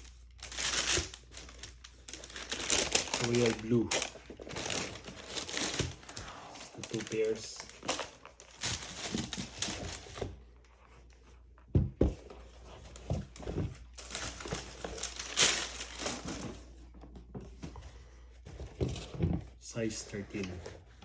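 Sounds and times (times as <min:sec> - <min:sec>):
paper packaging crinkling: 0:00.0 - 0:10.4, 0:13.9 - 0:16.6.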